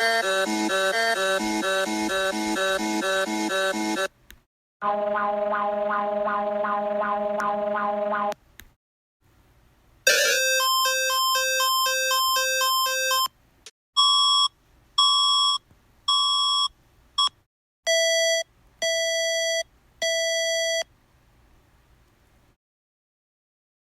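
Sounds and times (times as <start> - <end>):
fast two-tone warble: 4.8 - 8.3.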